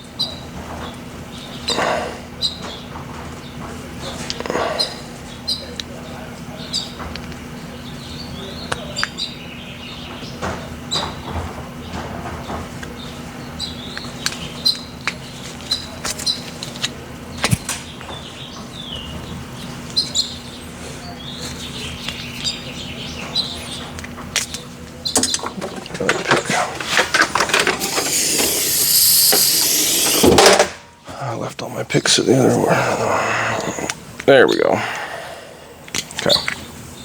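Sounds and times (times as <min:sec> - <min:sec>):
steady hum: 0:26.8 - 0:37.0.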